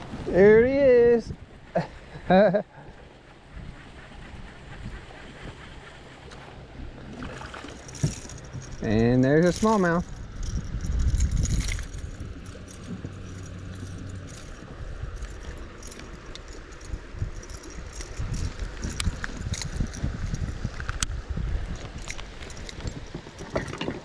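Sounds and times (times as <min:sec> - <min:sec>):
low bumps and rumble: 0:00.0 - 0:24.0
light clicks and rattles: 0:07.6 - 0:24.0.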